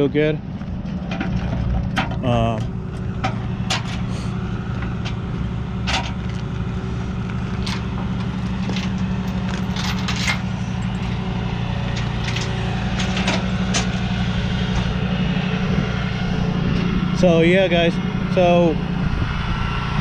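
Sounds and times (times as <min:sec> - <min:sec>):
truck engine idling: 0:00.0 - 0:20.0
tie-down clicks and clanks: 0:07.6 - 0:11.2, 0:11.9 - 0:14.0.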